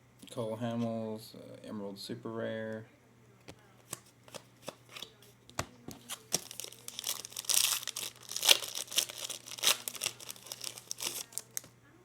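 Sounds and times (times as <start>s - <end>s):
cards flipping clicks: 3.9s - 11.7s
wrapper crinkling: 6.0s - 11.7s.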